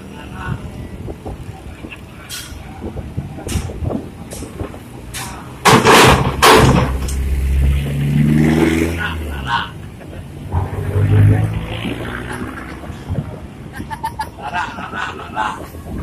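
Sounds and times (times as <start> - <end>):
knocks and clanks: 2.3 - 7.6
diesel engine revving: 5.6 - 13.6.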